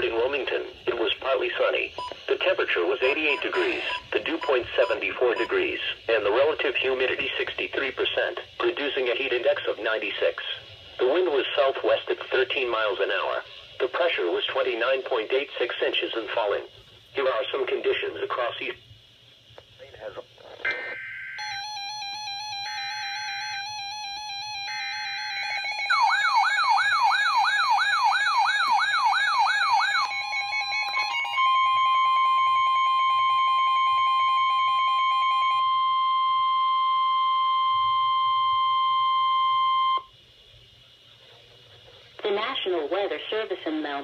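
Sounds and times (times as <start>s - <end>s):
digital data bursts: 0.0s - 16.6s, 19.8s - 35.8s
steady warning tone: 0.0s - 16.8s, 20.6s - 40.5s
siren-like sweeping tone: 20.9s - 40.0s.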